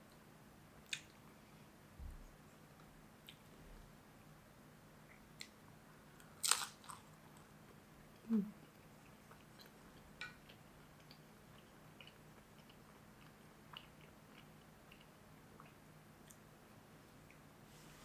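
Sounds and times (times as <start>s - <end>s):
crunchy bite: 6.4s - 7.1s
chewing with mouth clicks: 8.6s - 16.4s.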